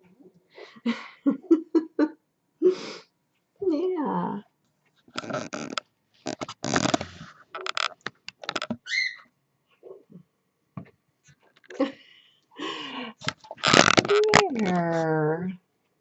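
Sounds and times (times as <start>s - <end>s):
rustling and clicking: 4.7s - 8.8s, 13.2s - 15.1s
cockatiel chirp: 8.8s - 9.3s.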